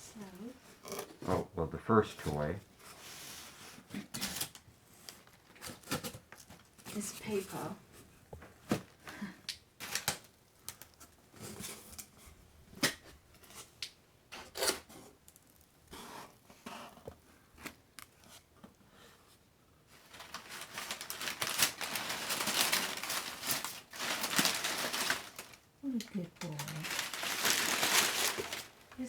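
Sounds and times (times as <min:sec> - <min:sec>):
packing paper crinkling: 0:19.9 - 0:29.0.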